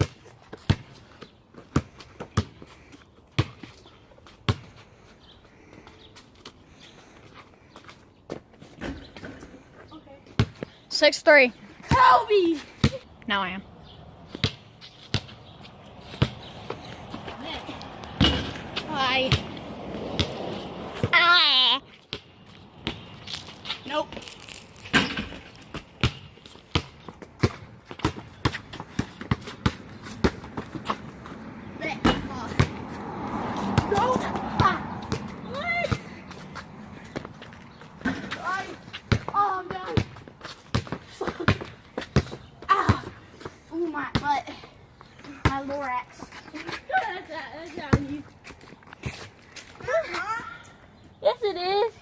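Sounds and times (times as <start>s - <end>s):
basketball bouncing: 0.0s - 1.0s, 3.4s - 3.7s, 10.4s - 10.7s, 11.8s - 12.2s, 12.8s - 13.0s, 14.3s - 15.4s, 16.1s - 21.2s, 22.1s - 23.1s, 24.9s - 31.1s, 31.9s - 32.9s, 38.0s - 43.2s, 47.8s - 48.2s.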